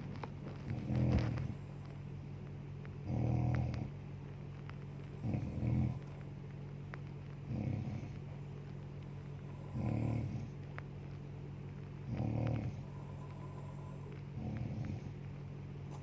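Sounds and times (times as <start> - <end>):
steady low hum: 0.0 - 16.0
woman snoring: 9.5 - 10.5.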